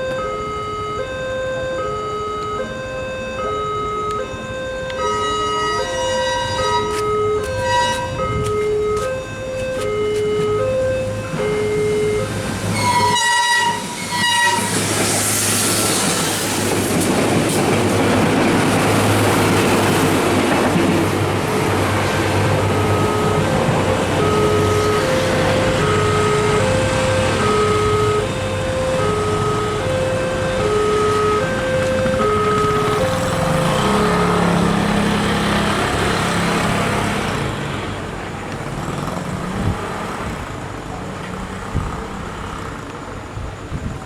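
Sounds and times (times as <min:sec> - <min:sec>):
two-tone crossing alarm: 0:00.0 - 0:16.2, 0:17.6 - 0:37.4
locomotive horn blasts: 0:01.8 - 0:14.9, 0:21.5 - 0:35.1
train wheels rumbling on rails: 0:04.9 - 0:44.0.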